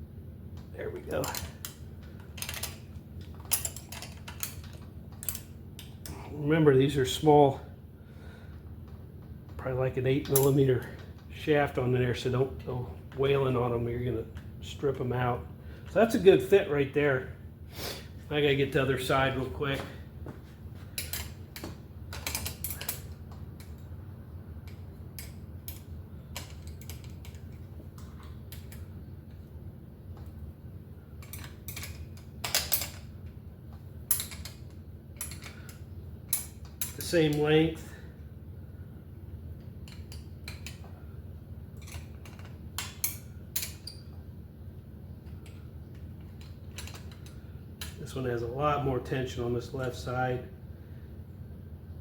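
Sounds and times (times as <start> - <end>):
steady low hum: 0.0 - 52.0
tools and metal parts clicking: 1.1 - 6.2, 10.2 - 11.0, 21.0 - 23.9, 24.6 - 28.8, 31.2 - 33.1, 34.1 - 37.2, 39.8 - 40.9, 41.8 - 44.2, 45.3 - 48.0.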